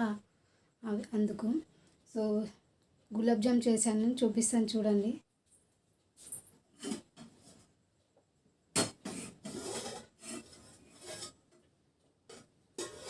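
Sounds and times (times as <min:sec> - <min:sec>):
scraping and rubbing sounds: 0:06.2 - 0:07.8, 0:08.8 - 0:13.0.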